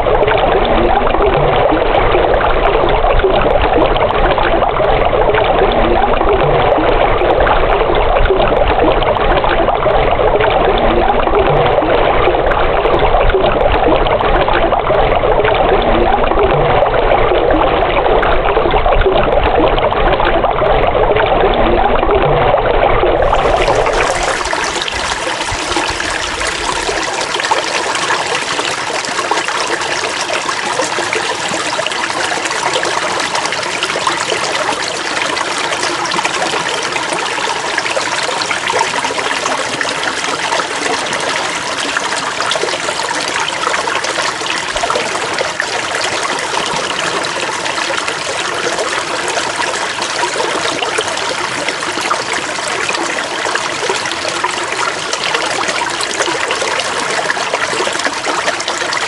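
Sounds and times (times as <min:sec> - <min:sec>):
water trickling and splashing: 0:00.0 - 0:59.0.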